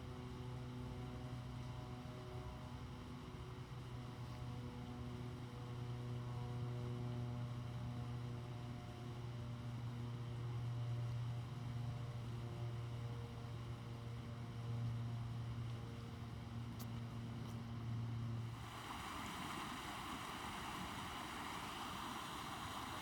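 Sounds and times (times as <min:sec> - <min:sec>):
steady low hum: 0:16.2 - 0:23.0.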